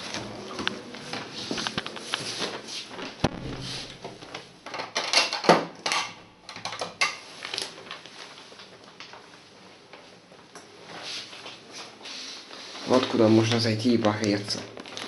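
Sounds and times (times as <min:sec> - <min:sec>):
rustling scrapes: 0:01.0 - 0:04.4.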